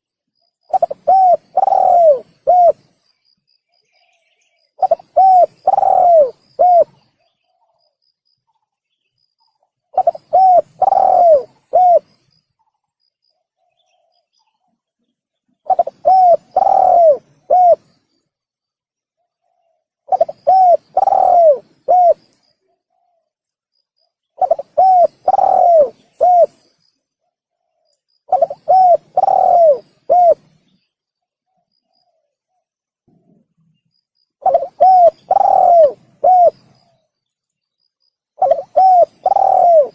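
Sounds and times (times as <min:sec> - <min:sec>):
dove cooing: 0:00.7 - 0:02.9, 0:04.8 - 0:07.8, 0:09.9 - 0:12.2, 0:15.7 - 0:17.9, 0:19.4 - 0:23.3, 0:24.4 - 0:26.7, 0:28.3 - 0:30.6, 0:34.4 - 0:36.9, 0:38.4 - 0:39.9.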